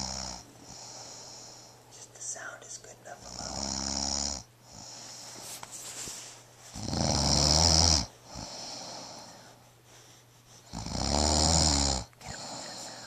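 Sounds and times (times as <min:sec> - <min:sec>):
loud snoring: 0:00.0 - 0:01.7, 0:03.3 - 0:05.0, 0:06.8 - 0:09.4, 0:10.7 - 0:13.0
soft breathing: 0:00.0 - 0:03.8, 0:04.6 - 0:06.8, 0:08.1 - 0:10.9, 0:12.0 - 0:13.0.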